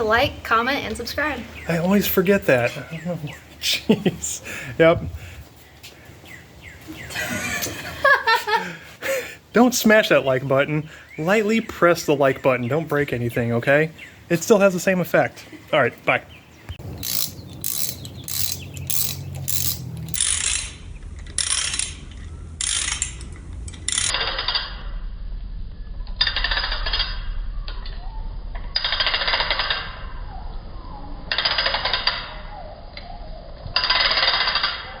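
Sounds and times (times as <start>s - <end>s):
ratchet wrench clicking: 16.8s - 24.6s, 33.8s - 34.8s.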